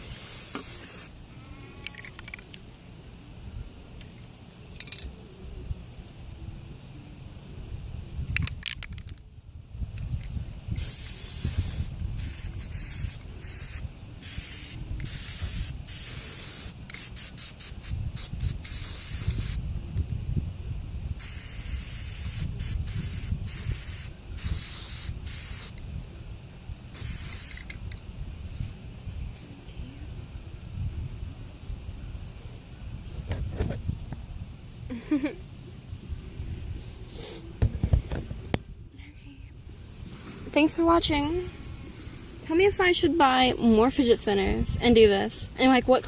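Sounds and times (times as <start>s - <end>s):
spray paint can hissing: 0.0s - 1.1s, 10.8s - 19.7s, 21.2s - 25.8s, 26.9s - 28.0s.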